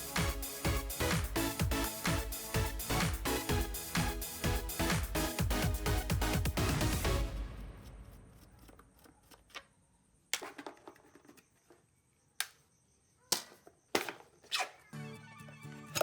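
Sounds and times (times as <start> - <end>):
background music: 0.0 - 8.2, 14.9 - 16.0.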